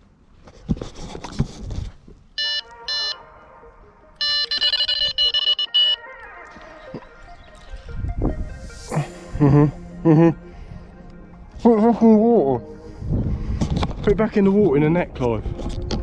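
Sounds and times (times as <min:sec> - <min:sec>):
electronic bite alarm beeps: 0:02.4 - 0:03.2, 0:04.2 - 0:06.0.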